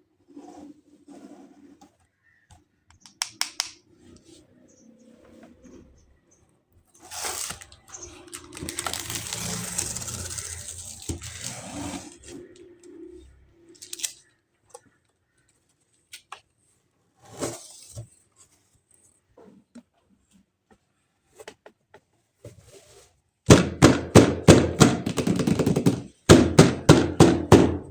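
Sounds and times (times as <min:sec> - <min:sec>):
handling clicks and taps: 0:02.9 - 0:03.8
packaging tearing and crinkling: 0:07.1 - 0:11.5.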